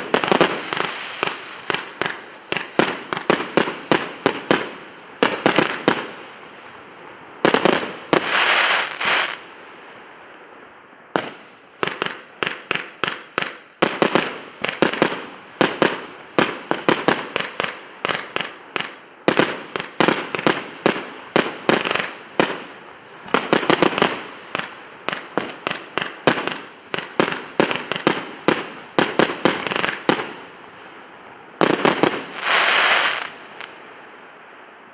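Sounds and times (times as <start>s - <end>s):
firework bangs and popping: 0.0s - 6.3s, 7.4s - 9.4s, 11.2s - 30.6s, 31.6s - 33.7s.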